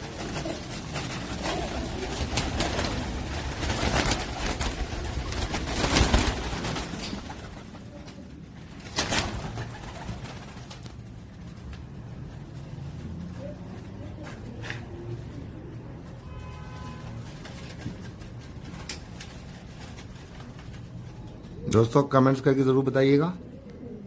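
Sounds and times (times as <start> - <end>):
pigeons cooing: 0.0 - 8.3, 23.4 - 24.0.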